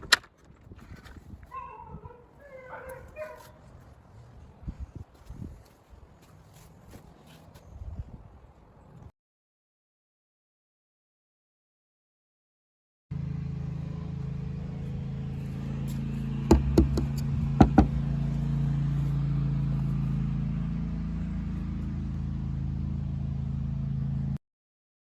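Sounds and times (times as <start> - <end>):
low mechanical hum: 13.2 - 24.3
sharp knocks: 16.5 - 18.0.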